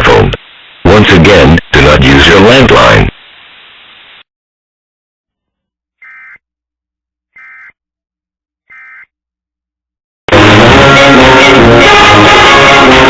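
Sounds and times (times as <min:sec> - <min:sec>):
buzzing digital data tones: 0:06.0 - 0:06.4, 0:07.4 - 0:07.7, 0:08.7 - 0:09.1.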